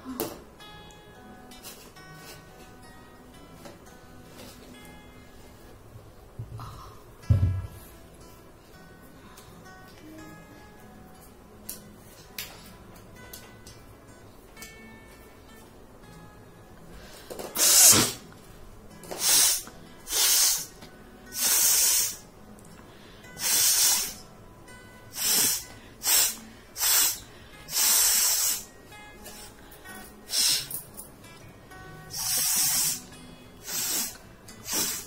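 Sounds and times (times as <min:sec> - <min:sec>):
faint background music: 0:00.0 - 0:35.0
person blowing air through nose: 0:17.5 - 0:18.2, 0:19.2 - 0:22.3, 0:23.4 - 0:24.2, 0:25.1 - 0:29.6, 0:30.2 - 0:30.8, 0:32.1 - 0:35.0.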